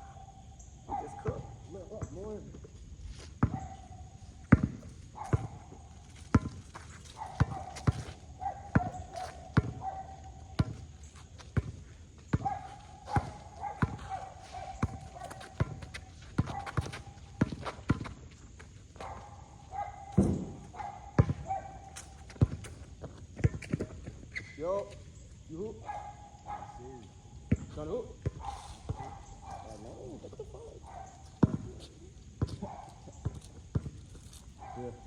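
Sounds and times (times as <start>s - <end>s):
basketball bouncing: 4.4s - 18.2s, 20.1s - 24.2s, 31.2s - 34.0s.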